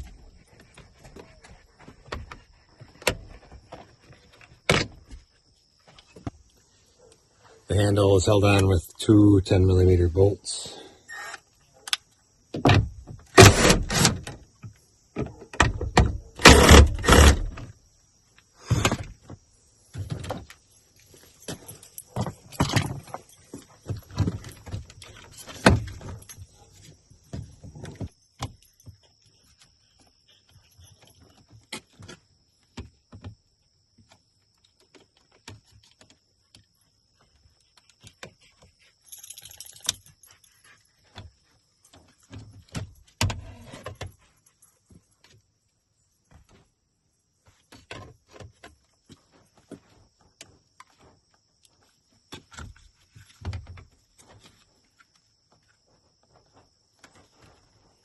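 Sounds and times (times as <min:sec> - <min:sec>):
hand tools clicking and rattling: 0:39.0 - 0:40.5.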